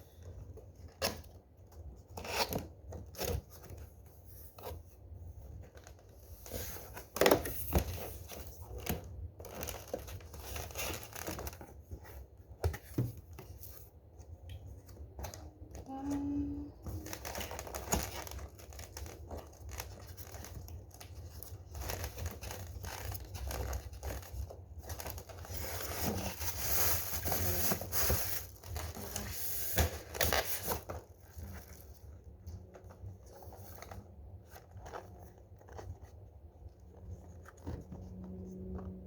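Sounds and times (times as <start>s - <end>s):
packaging crinkling and tearing: 16.9s - 36.1s.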